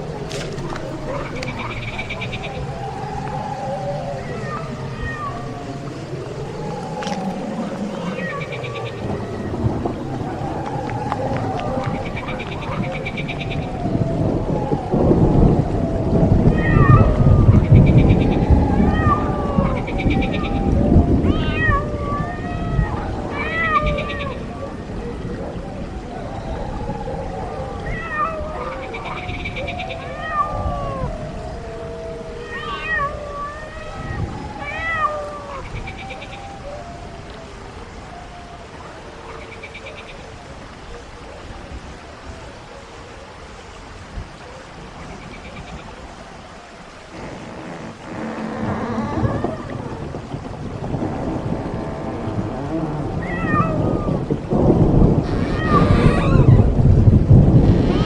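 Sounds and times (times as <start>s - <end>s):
wailing meow-like animal calls: 0.1s - 40.4s, 47.1s - 56.8s, 57.6s - 58.0s
high cries falling in pitch: 0.2s - 14.0s, 47.1s - 50.2s, 55.0s - 56.8s, 57.5s - 58.0s
deep rumble: 47.0s - 58.0s.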